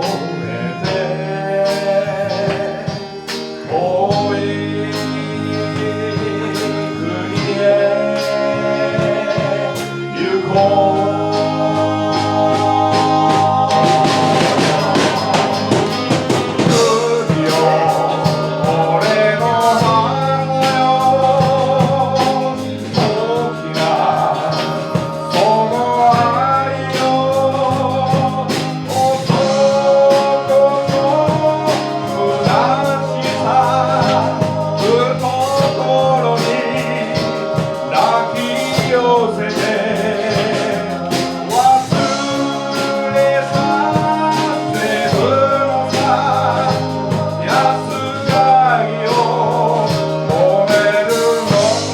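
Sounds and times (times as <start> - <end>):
live band music: 0.0 - 51.9
man singing: 0.0 - 51.9.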